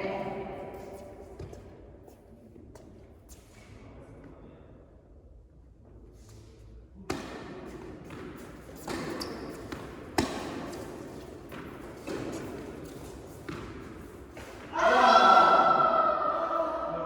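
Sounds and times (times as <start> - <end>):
racket striking tennis ball: 7.1 - 14.7.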